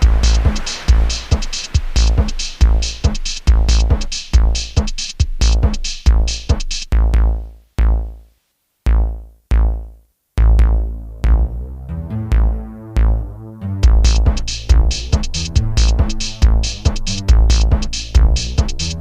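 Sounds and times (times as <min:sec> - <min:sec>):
deep bass-drum hits: 0:00.0 - 0:08.2, 0:13.8 - 0:19.0
electronic music with drum-machine beat: 0:00.0 - 0:08.2, 0:08.9 - 0:19.0.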